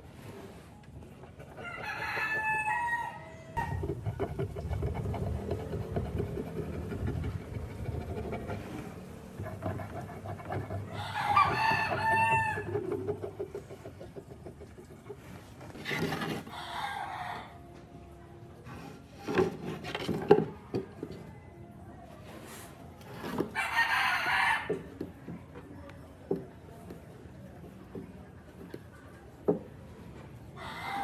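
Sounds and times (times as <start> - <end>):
rooster crowing: 1.6 - 3.7, 10.9 - 12.9, 16.5 - 17.7, 23.6 - 24.8, 30.6 - 31.0.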